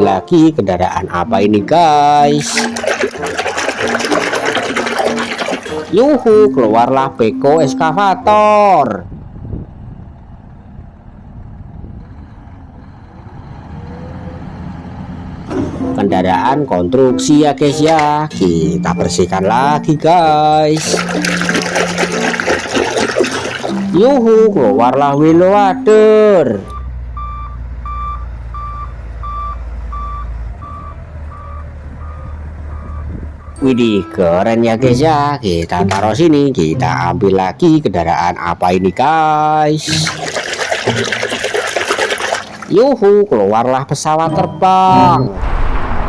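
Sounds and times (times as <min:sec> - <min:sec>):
low engine-like rumble: 0:08.2 - 0:15.5
reversing alarm beeping: 0:26.6 - 0:34.2.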